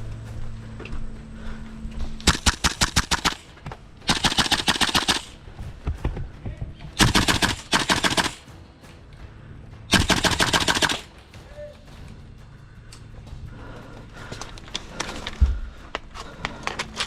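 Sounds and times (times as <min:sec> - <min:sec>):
airsoft rifle full-auto fire: 0:02.2 - 0:03.5, 0:04.1 - 0:05.4, 0:07.0 - 0:08.5, 0:09.9 - 0:11.1.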